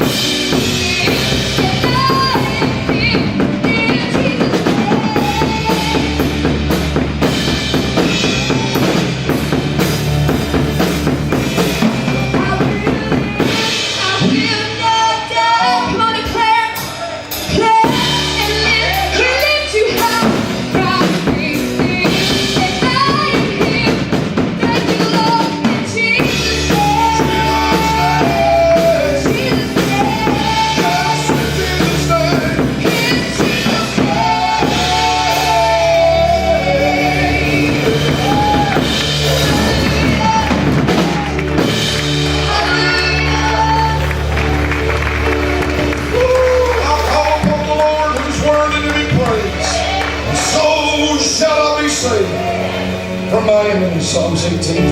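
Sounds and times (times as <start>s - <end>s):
person singing: 0.0s - 6.8s, 11.6s - 44.7s
bass guitar: 0.0s - 54.9s
drum kit: 0.0s - 54.9s
keyboard: 0.0s - 54.9s.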